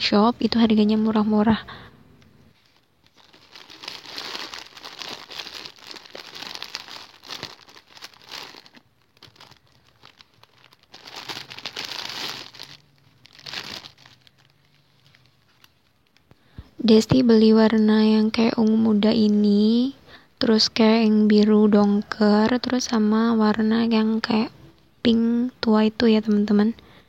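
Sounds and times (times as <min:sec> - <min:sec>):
packaging crinkling: 0:02.6 - 0:16.3.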